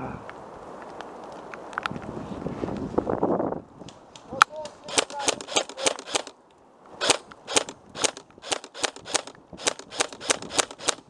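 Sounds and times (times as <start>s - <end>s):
airsoft gun shots: 4.9s - 6.3s, 7.0s - 11.0s.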